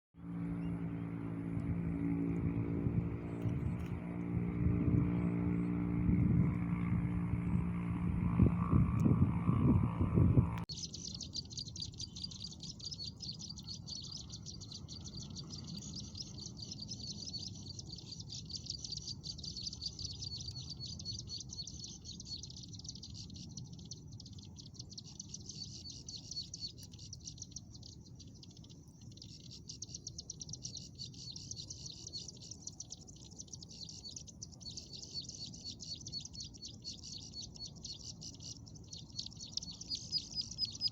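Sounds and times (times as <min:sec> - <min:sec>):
bird chattering trill: 0:29.2 - 0:40.9.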